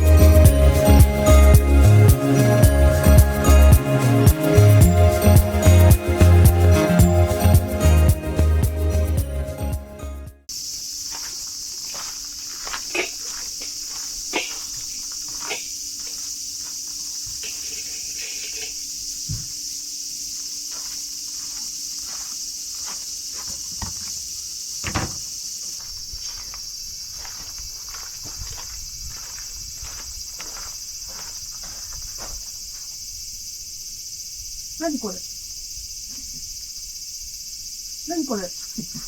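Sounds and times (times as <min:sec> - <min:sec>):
insects chirring: 0:10.5 - 0:39.0.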